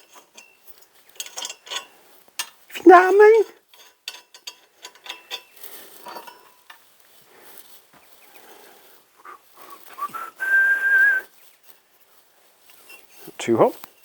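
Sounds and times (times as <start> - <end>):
person whistling: 9.2 - 11.3.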